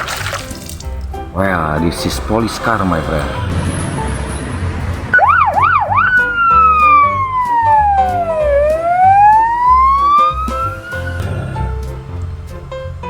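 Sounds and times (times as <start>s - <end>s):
background music with steady beat: 0.0s - 13.0s
police siren: 5.2s - 11.4s.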